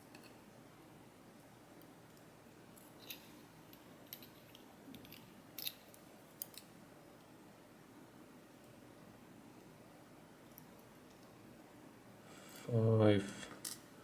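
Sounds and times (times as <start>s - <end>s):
small metal lock parts clicking: 2.2s - 6.7s.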